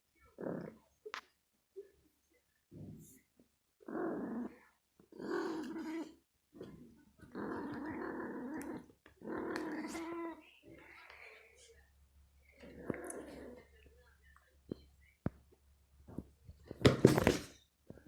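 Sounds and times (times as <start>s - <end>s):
cat growling and yowling: 7.3s - 10.4s.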